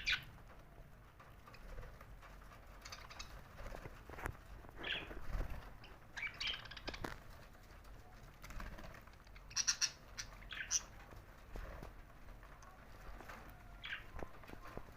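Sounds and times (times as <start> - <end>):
budgerigars chirping: 9.5 - 10.9.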